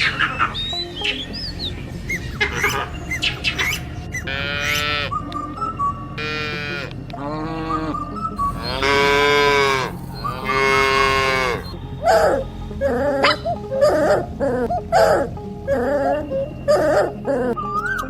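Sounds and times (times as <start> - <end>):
cows mooing: 6.2 - 17.4.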